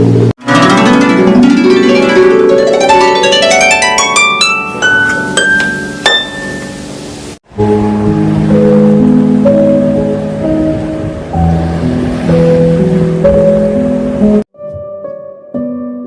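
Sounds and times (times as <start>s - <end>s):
harp music: 0.0s - 16.0s.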